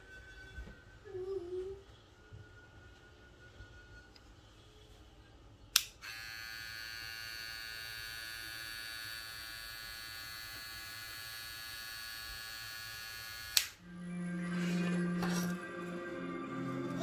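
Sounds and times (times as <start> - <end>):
hair clipper switch click: 5.8 - 6.2, 12.2 - 13.8
hair clipper motor whining: 6.0 - 13.8.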